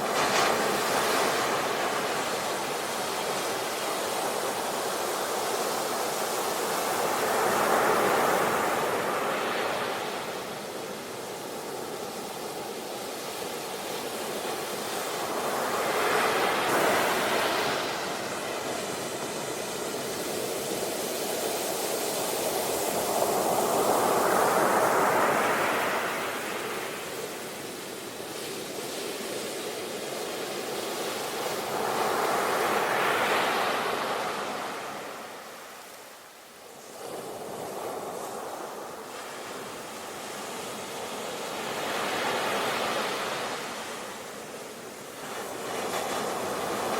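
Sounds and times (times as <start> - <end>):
sea waves breaking: 14.5 - 27.6.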